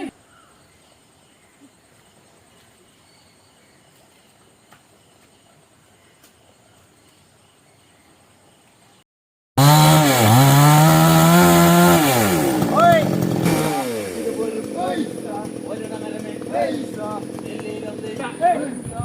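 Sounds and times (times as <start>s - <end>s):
chainsaw engine running: 9.6s - 19.0s.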